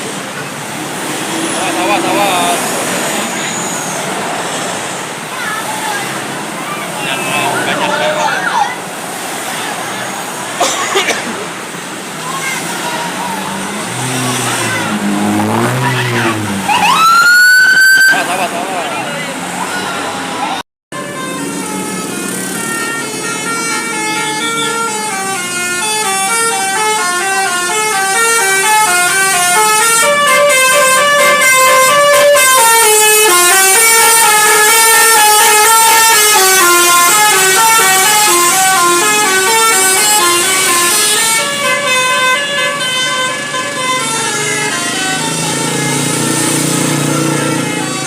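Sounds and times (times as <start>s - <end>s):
bus musical horn playing tune: 20.9s - 48.0s.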